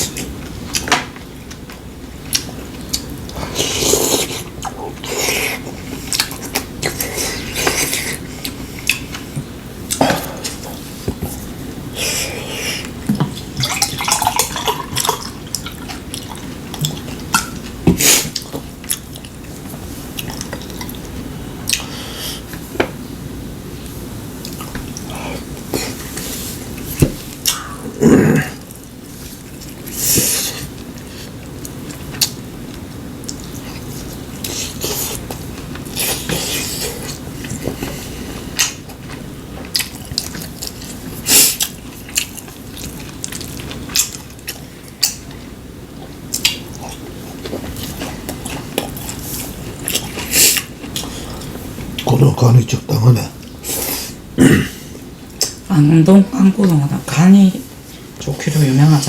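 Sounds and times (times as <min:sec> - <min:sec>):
chewing: 0:00.1 - 0:11.5, 0:12.8 - 0:21.9, 0:28.6 - 0:52.1.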